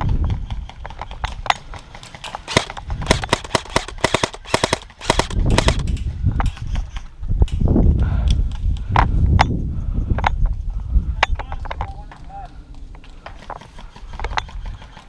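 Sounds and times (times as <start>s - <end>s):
airsoft guns firing: 1.9s - 5.9s.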